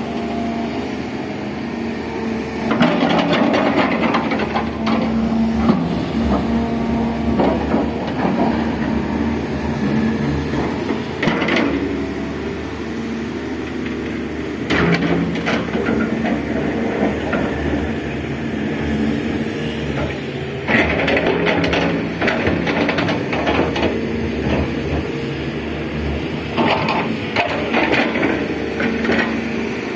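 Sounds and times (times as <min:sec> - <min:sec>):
excavator diesel engine running: 0:00.0 - 0:29.9
excavator clatters: 0:02.6 - 0:09.4, 0:10.3 - 0:12.1, 0:13.6 - 0:19.0, 0:19.6 - 0:25.4, 0:26.0 - 0:29.8.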